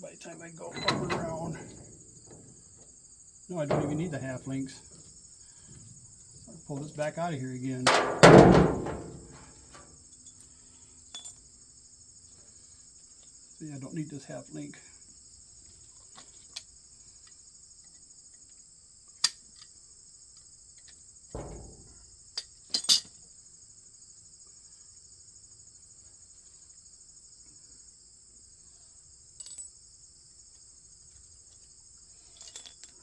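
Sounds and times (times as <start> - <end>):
crickets chorus: 0.0 - 33.0
metal chain clinking: 22.7 - 23.2, 32.2 - 33.0.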